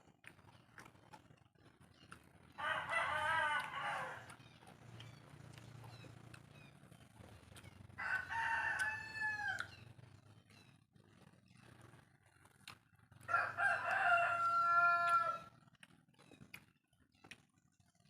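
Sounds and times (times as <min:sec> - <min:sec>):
rooster crowing: 0:02.6 - 0:04.4, 0:08.0 - 0:09.8, 0:13.3 - 0:15.5.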